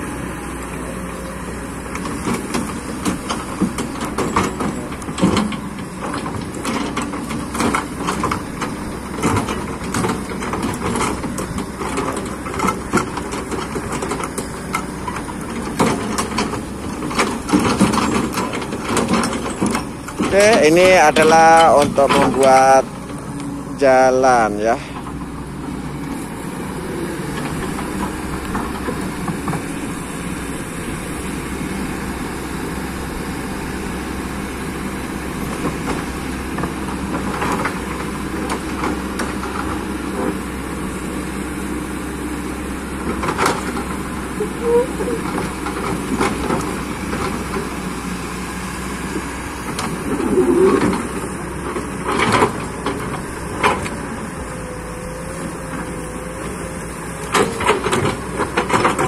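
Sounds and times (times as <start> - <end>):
diesel engine running: 0.0 - 59.0
sharp knocks and clanks: 2.2 - 22.9.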